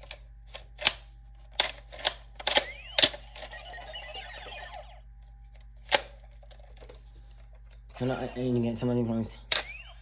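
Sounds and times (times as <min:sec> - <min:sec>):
electronic toy sound effect: 0:02.6 - 0:05.1, 0:09.6 - 0:10.0.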